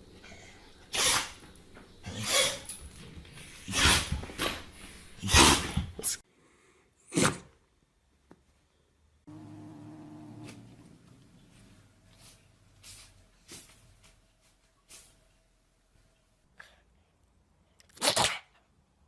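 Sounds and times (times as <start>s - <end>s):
pet sneezing: 0.9s - 1.4s, 2.0s - 2.8s, 3.6s - 4.6s, 5.2s - 6.2s, 17.9s - 18.6s.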